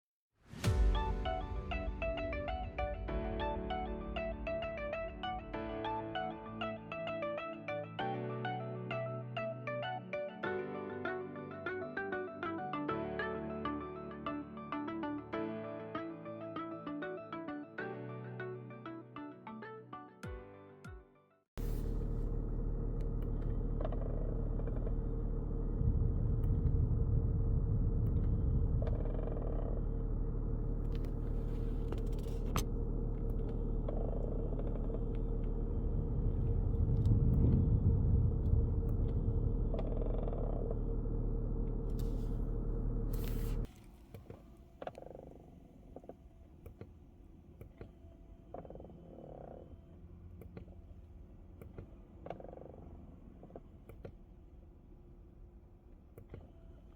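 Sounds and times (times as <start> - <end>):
air conditioning hum: 21.6 - 44.8.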